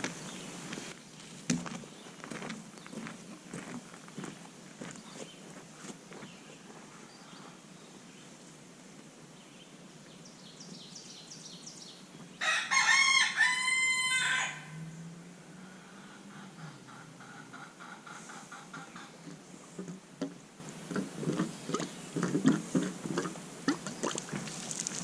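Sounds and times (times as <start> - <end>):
rooster crowing: 12.4 - 14.8.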